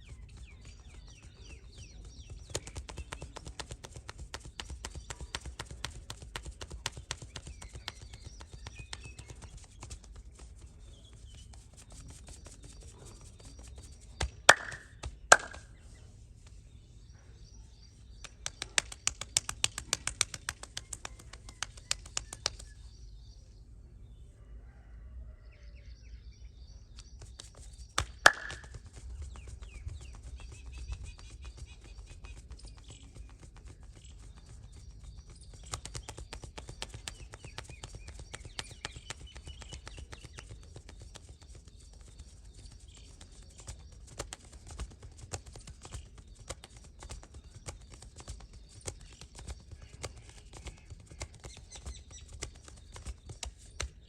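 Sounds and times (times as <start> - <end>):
rapid hand tapping massage: 0.0 - 15.8, 18.1 - 22.9, 27.0 - 54.0
loud sharp hand slaps: 14.5 - 15.7, 28.0 - 28.8.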